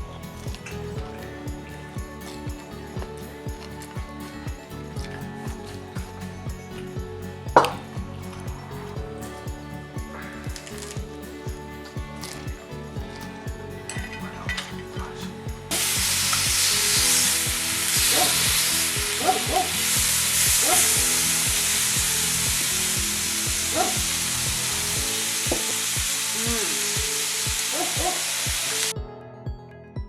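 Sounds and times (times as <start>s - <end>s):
background music with beat: 0.0s - 30.0s
meat sizzling on grill: 15.7s - 28.9s.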